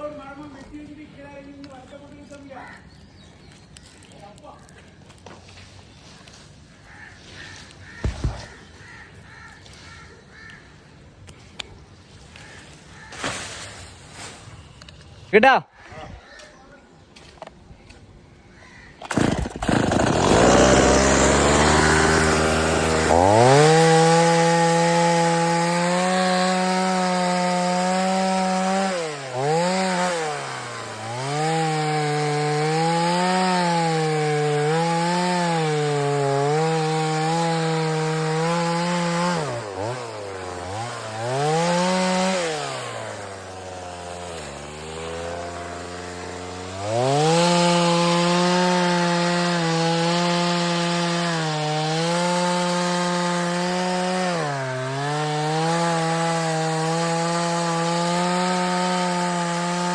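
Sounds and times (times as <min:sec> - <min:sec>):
chainsaw cutting wood: 0:19.0 - 0:59.9.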